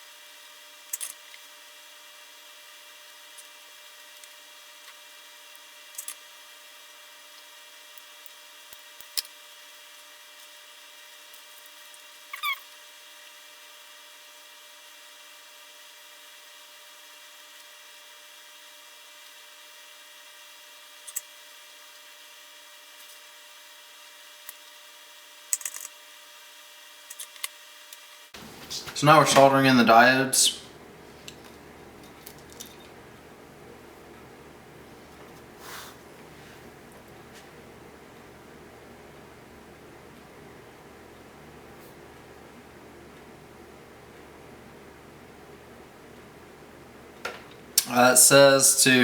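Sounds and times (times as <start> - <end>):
brief squeak: 12.3 - 12.7
faint hum: 28.4 - 49.0
steady low hiss: 28.4 - 49.0.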